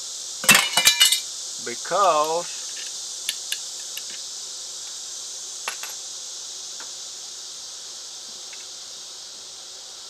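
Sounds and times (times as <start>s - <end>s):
katydids chorus: 1.3s - 6.6s.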